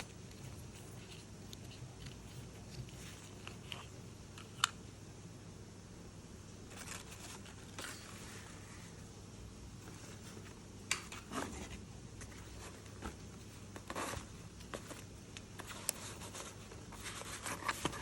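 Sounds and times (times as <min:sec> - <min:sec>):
packaging rustling and clicking: 0:12.8 - 0:18.0.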